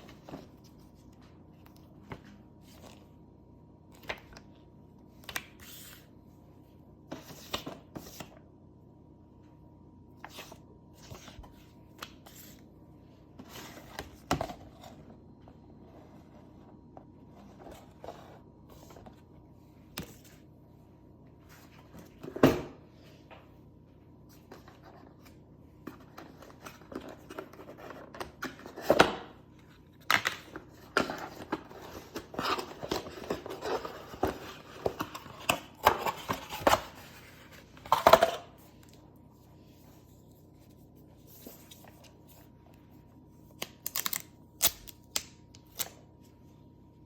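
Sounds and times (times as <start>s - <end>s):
box and plastic rustling: 25.9s - 42.6s.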